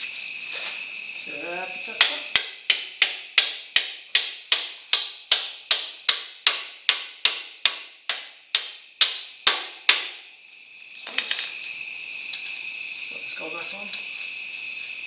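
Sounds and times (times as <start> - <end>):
cricket chirring: 0.0 - 15.0
hammer tapping on metal: 2.0 - 10.2.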